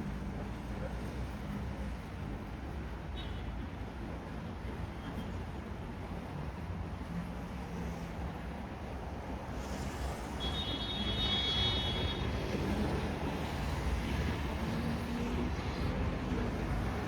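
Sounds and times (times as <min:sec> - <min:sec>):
low rumble of road traffic: 0:00.0 - 0:17.0.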